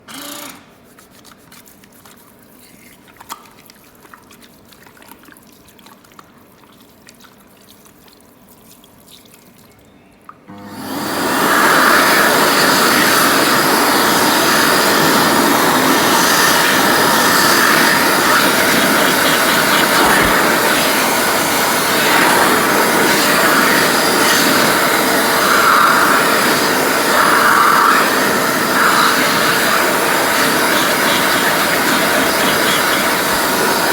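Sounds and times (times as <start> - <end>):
tap water running loudly: 10.7 - 33.9.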